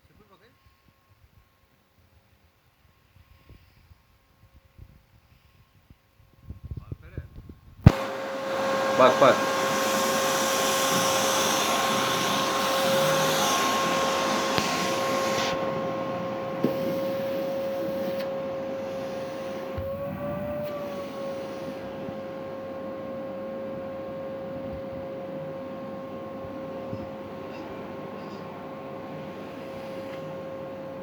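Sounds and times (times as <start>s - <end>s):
vacuum cleaner whining: 7.9s - 31.0s.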